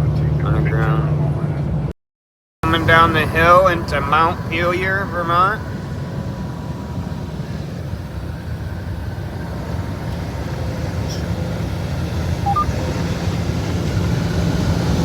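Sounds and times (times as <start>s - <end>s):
truck engine and road rumble: 0.0s - 1.9s, 2.6s - 15.0s
two-note electronic beep: 12.5s - 12.7s.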